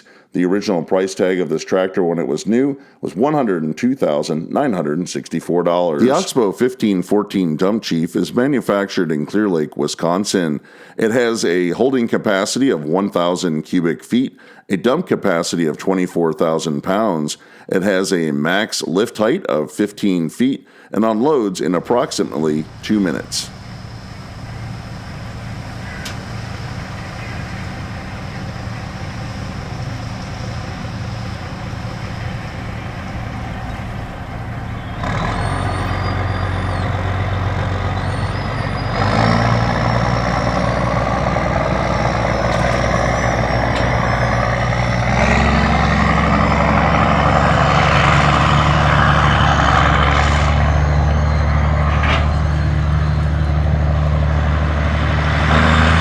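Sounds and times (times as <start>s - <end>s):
diesel machinery engine drone: 6.0s - 6.3s, 22.2s - 56.0s
hydraulic whine: 22.3s - 56.0s.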